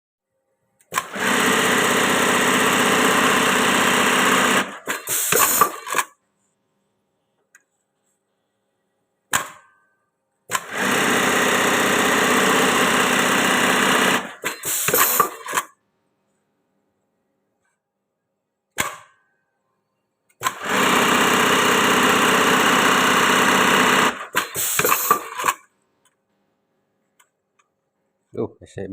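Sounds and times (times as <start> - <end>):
sewing machine stitching: 0.9 - 6.2, 10.5 - 15.8, 20.4 - 25.7
brief mechanical sound: 4.8 - 6.2, 14.4 - 15.8, 24.3 - 25.7.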